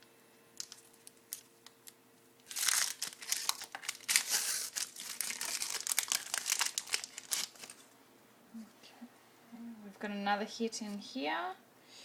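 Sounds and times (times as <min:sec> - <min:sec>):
card pack wrapper tearing and crinkling: 0:00.6 - 0:07.9.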